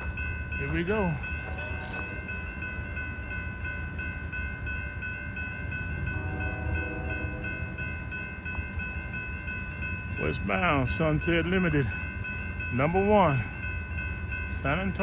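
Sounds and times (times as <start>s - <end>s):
passenger train rumbling: 0.0s - 15.0s
warning bell ringing: 0.0s - 15.0s
distant train horn chord: 5.8s - 8.4s.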